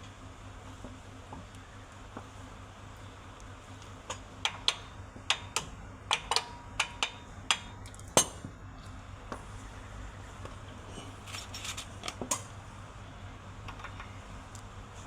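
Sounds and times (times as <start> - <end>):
hammer tapping on metal: 4.1 - 8.4.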